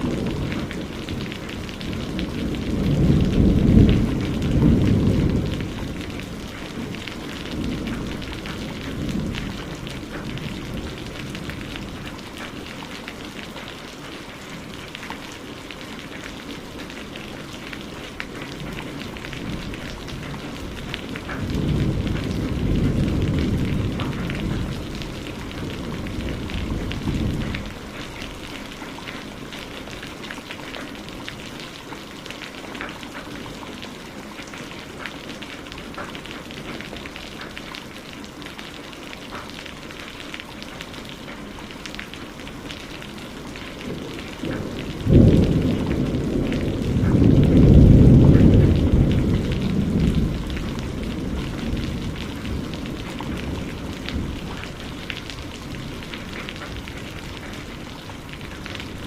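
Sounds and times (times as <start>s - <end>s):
thunder rolling: 0.0s - 12.2s, 18.5s - 28.0s, 43.5s - 59.0s
rain pattering: 0.0s - 59.0s
thunder crack: 19.4s - 27.8s, 43.8s - 54.7s.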